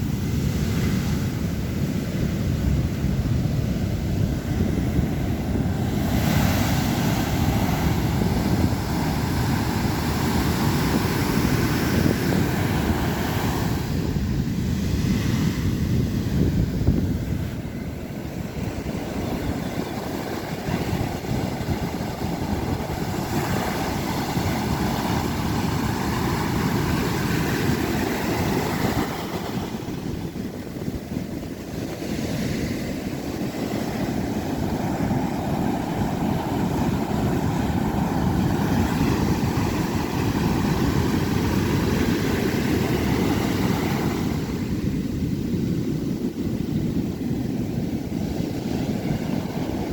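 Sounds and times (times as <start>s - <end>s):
ocean surf breaking: 0.0s - 49.9s.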